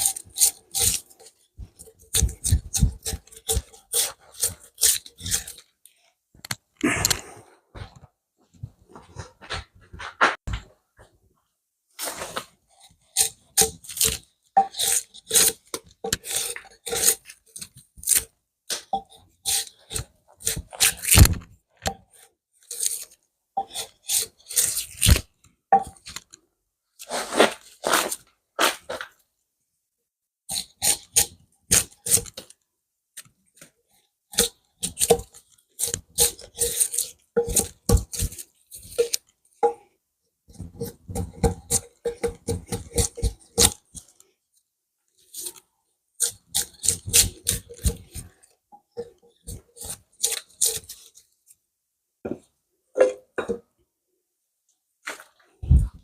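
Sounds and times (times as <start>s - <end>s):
drawknife peeling bark: 0.0s - 5.7s, 12.1s - 21.5s, 22.1s - 25.3s, 30.5s - 32.5s, 34.3s - 39.3s, 40.5s - 44.2s, 46.2s - 51.3s.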